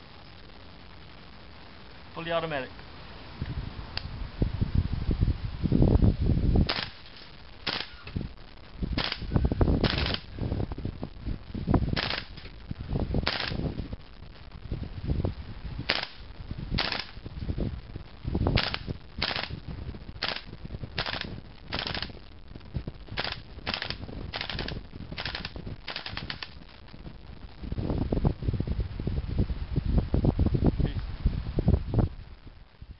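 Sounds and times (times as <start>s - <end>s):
airsoft rifle shots: 6.7s - 8.2s, 9.0s - 10.3s, 12.0s - 12.5s, 13.2s - 13.6s, 15.9s - 16.2s, 16.8s - 17.2s, 18.6s - 19.6s, 20.2s - 22.2s, 23.2s - 26.6s.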